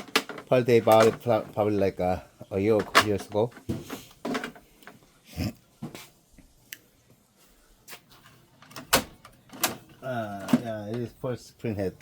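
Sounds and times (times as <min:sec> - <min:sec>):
plastic printer parts clicking: 0:00.0 - 0:01.7.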